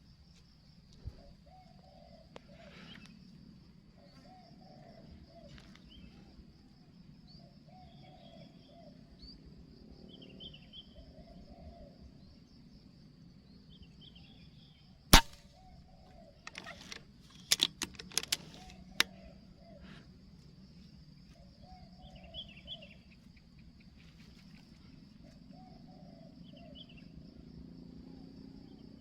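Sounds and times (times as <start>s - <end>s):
insect drone: 0.0s - 29.0s
doves cooing: 1.0s - 3.1s, 4.0s - 6.3s
air rifle shot: 15.1s - 15.5s
quick sharp clicks: 15.2s - 15.4s, 16.5s - 19.1s.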